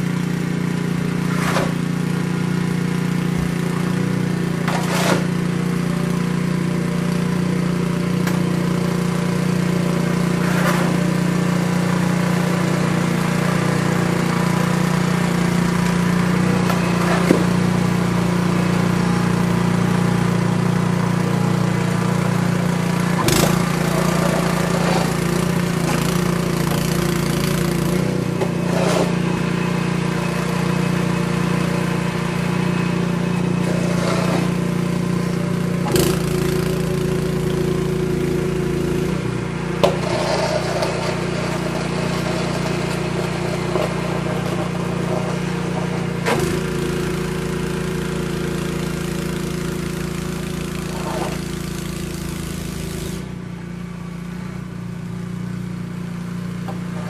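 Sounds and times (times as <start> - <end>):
engine running steadily: 0.0 - 57.0
brief knocks or scrapes: 1.2 - 1.8, 4.6 - 5.4, 10.4 - 11.1, 28.4 - 29.4, 39.8 - 45.4.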